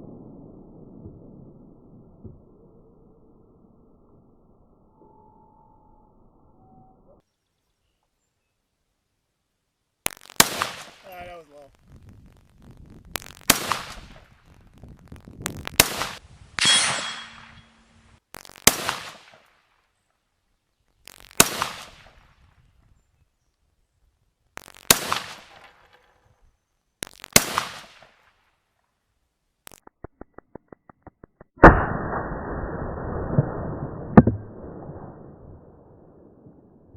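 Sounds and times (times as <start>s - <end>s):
rifle shots ringing steel targets: 16.6s - 18.1s.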